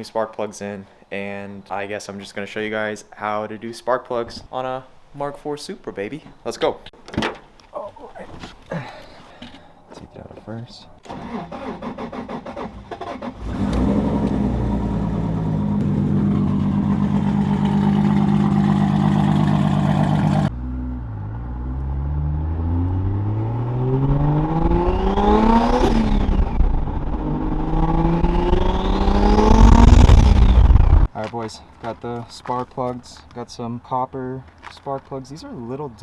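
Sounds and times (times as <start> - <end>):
turbocharged car engine revving: 11.7 - 31.1.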